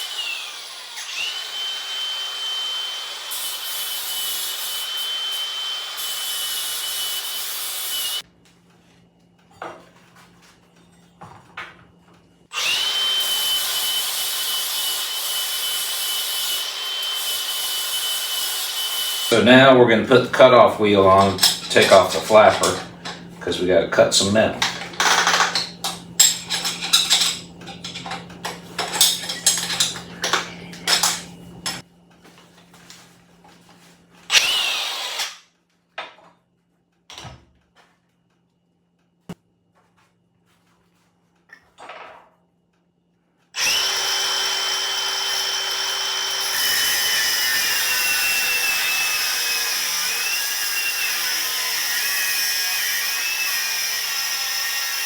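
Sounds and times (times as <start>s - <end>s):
angle grinder cutting steel: 0.0s - 8.2s, 12.5s - 31.8s, 34.3s - 35.4s, 43.6s - 55.0s
metal clinks and rattles: 24.6s - 31.8s.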